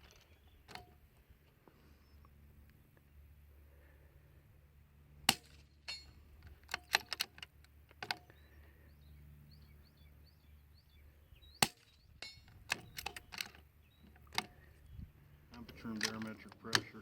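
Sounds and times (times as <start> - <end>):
rifle bolt clicking: 15.5 - 17.0.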